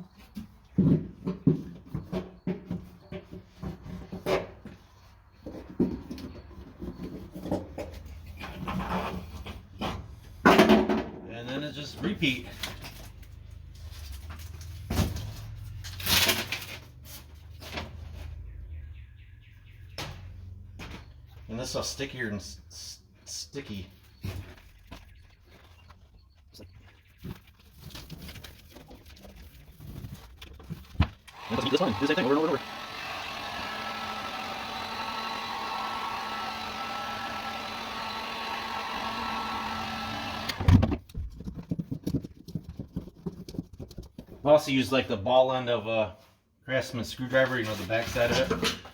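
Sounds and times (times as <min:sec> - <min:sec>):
heat gun fan humming: 0:31.3 - 0:40.8.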